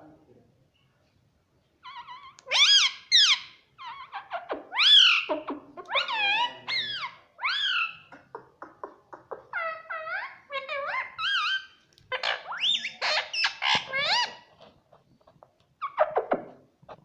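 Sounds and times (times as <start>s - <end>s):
parrot squawking: 1.8s - 8.1s, 9.3s - 14.6s.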